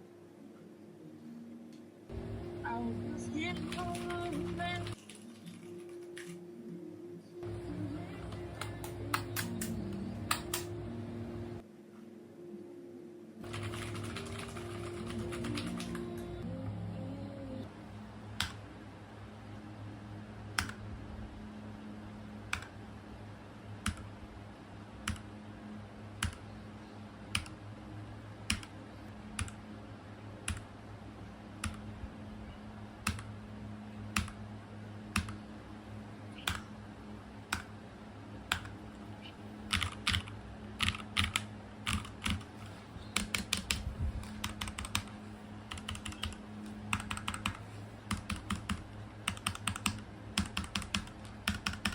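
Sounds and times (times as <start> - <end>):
steady low hum: 0.0 - 51.9
keyboard keys typing: 2.7 - 6.5, 8.0 - 10.8, 13.4 - 16.4, 23.8 - 24.1, 25.0 - 25.3, 26.2 - 26.5, 27.3 - 27.6, 28.5 - 29.6, 31.6 - 31.9, 33.0 - 33.3, 34.1 - 34.4, 35.1 - 35.4, 36.4 - 36.7, 38.5 - 51.9.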